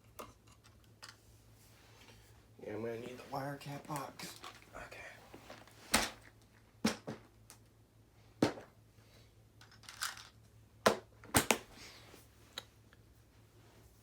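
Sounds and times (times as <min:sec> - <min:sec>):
plastic parts clicking and knocking: 0:09.6 - 0:11.7.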